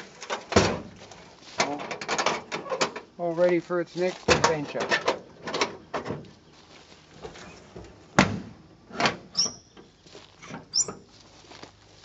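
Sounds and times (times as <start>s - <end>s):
knocks and thuds: 8.2s - 8.6s
short high squeaks: 9.3s - 9.8s, 10.4s - 11.1s.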